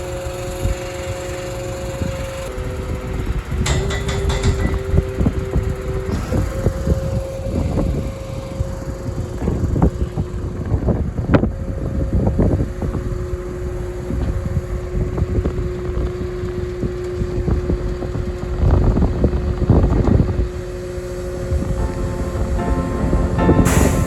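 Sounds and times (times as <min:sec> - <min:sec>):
farm machinery engine droning: 0:00.0 - 0:10.2.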